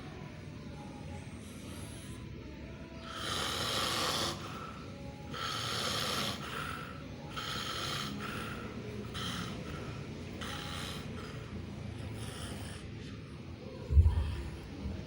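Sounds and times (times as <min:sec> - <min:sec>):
baby snoring: 0:03.0 - 0:11.5.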